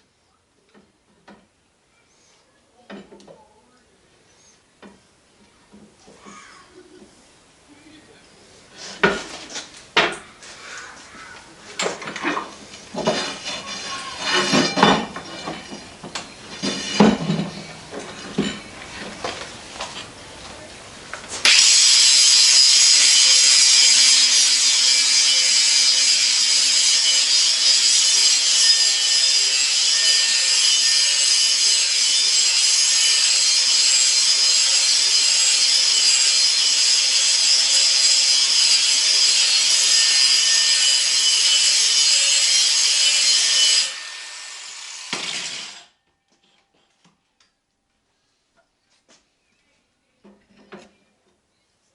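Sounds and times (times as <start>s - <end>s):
steel knocking and clanking: 11.8s - 18.7s
grinding machine: 21.4s - 45.9s.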